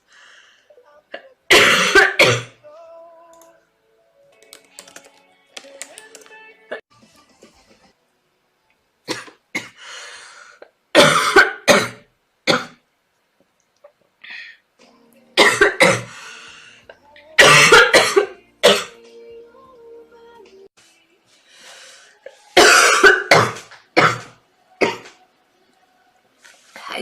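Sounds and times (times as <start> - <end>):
girl coughing: 1.5 - 2.6, 11.0 - 12.8, 15.4 - 16.1, 17.4 - 19.0, 22.6 - 25.1.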